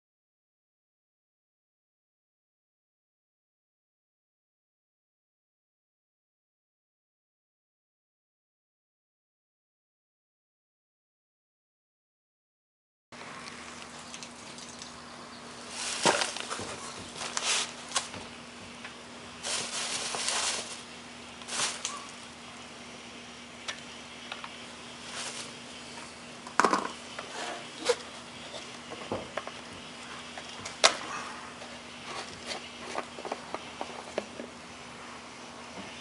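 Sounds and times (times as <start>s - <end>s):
faint steady hum: 13.2s - 36.0s
rustling: 13.6s - 22.4s, 24.9s - 26.2s.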